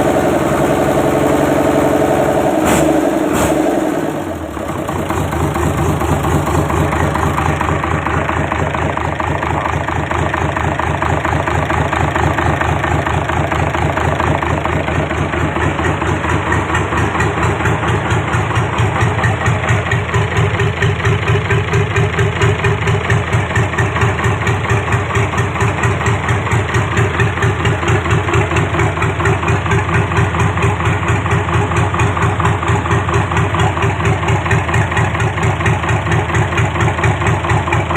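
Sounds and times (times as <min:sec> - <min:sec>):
diesel engine idling: 0:00.0 - 0:37.9.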